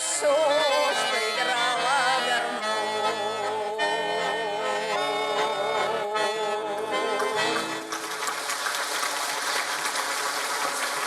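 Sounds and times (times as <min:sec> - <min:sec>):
accordion chords: 0:00.0 - 0:08.2
audience applause: 0:07.2 - 0:11.0.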